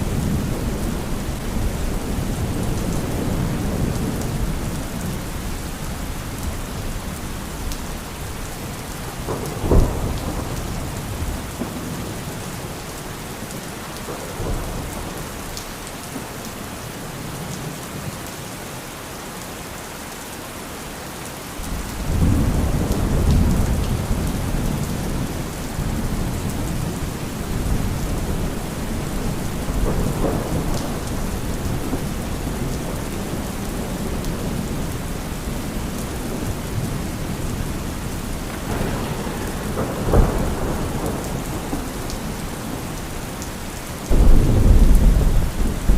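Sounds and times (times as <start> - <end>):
steady rain falling: 0.0 - 45.9
rolling thunder: 9.0 - 12.4, 21.6 - 43.3, 44.1 - 45.9.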